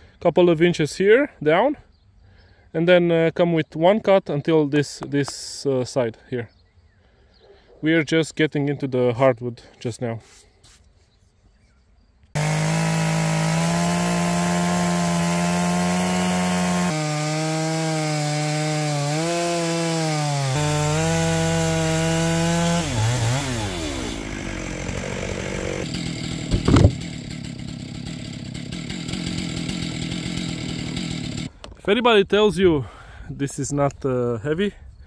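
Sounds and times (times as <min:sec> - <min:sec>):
chainsaw cutting through log: 0:12.4 - 0:31.6
sharp loud knock: 0:26.5 - 0:27.0.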